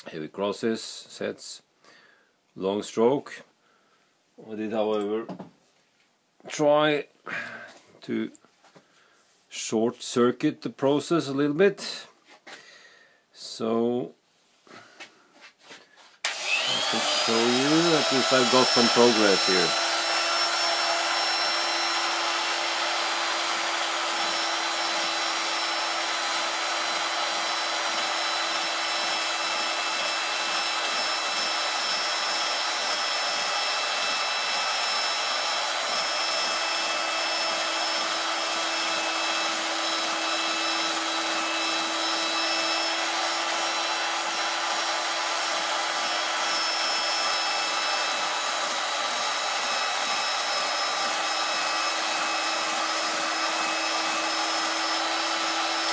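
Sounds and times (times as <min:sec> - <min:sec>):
steady mechanical whir: 0:16.3 - 0:55.9.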